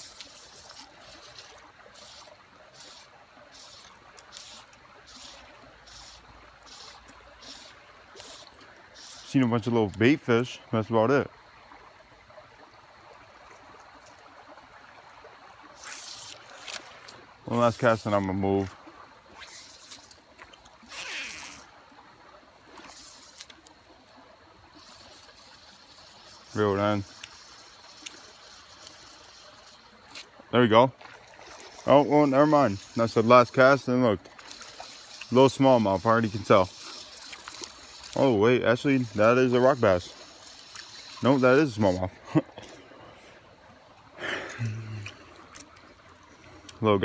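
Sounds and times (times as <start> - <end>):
soft hissing swishes: 0.0 - 9.7, 15.6 - 21.7, 22.6 - 30.4, 31.2 - 42.2
creek water trickling: 0.0 - 47.0.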